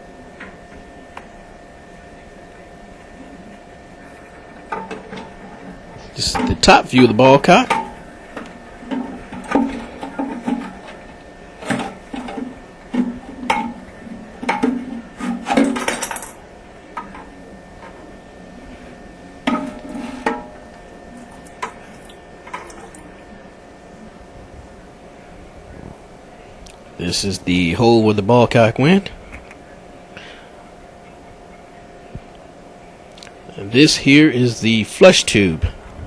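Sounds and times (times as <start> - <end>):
hard parts knocking and clattering: 14.4 - 16.4.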